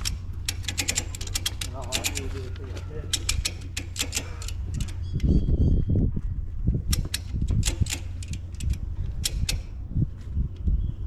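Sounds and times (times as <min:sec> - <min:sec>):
hardware clicking and rattling: 0:00.0 - 0:05.0, 0:06.9 - 0:09.7
low rumble: 0:00.0 - 0:11.0.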